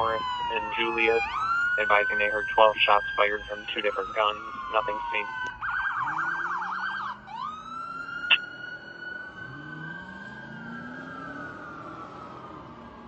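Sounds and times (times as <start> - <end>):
fire truck siren: 0.0 - 13.0
truck engine accelerating: 4.0 - 13.0.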